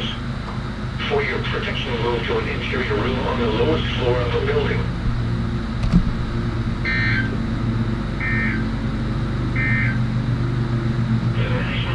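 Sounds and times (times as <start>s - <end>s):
steady low hum: 0.0s - 11.9s
warbling data bursts: 6.3s - 7.5s, 8.1s - 10.2s.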